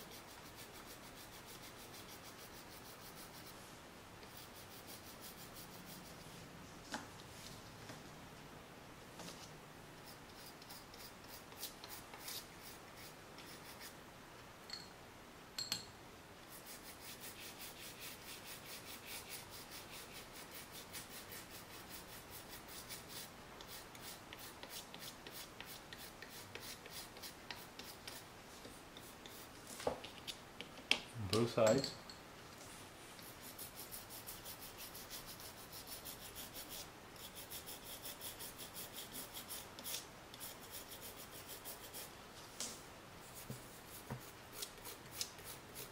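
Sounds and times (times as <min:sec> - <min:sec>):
small brush scrubbing: 0:00.0 - 0:06.4, 0:09.3 - 0:14.0, 0:16.5 - 0:29.6, 0:32.6 - 0:42.1, 0:43.2 - 0:45.9.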